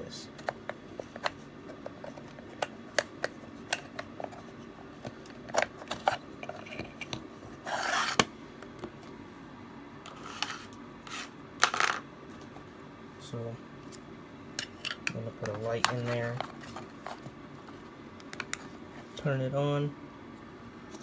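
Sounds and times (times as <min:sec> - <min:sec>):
short scraping rub: 0:07.6 - 0:08.2.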